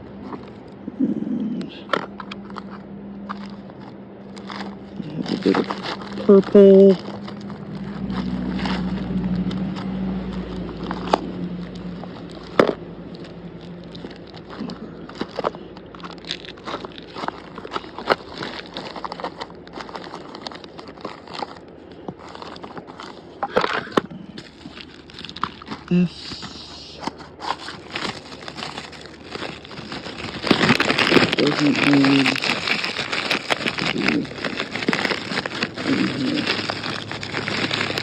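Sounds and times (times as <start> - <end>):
steady low hum: 0.0 - 38.0
fishing tackle rustling and clicking: 1.8 - 38.0.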